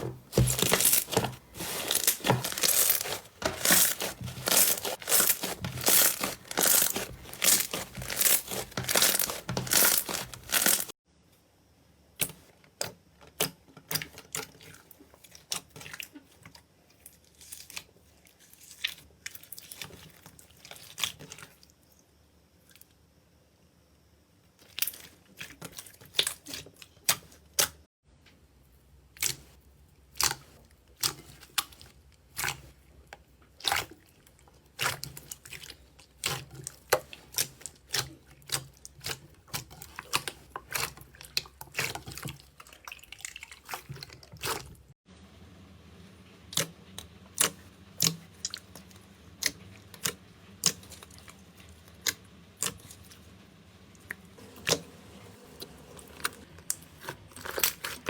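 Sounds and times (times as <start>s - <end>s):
slime squished by hand: 0.0s - 10.9s, 54.4s - 58.0s.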